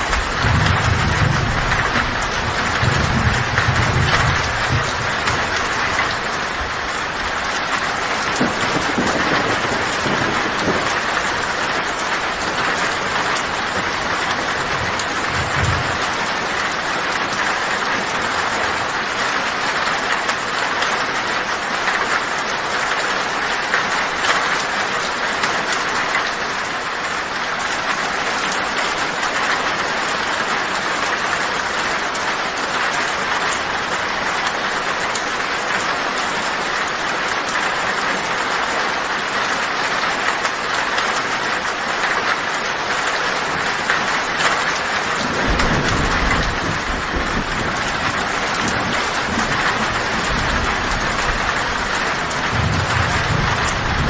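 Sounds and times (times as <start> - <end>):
low thunder rumble: 0.0 - 16.7, 45.2 - 54.0
heavy rain on a tin roof: 0.0 - 54.0.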